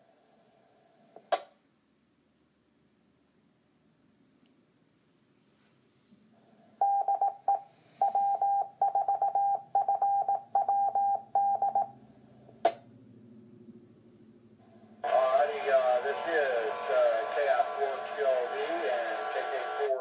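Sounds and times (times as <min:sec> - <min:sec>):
morse code beeps: 0:06.8 - 0:11.9.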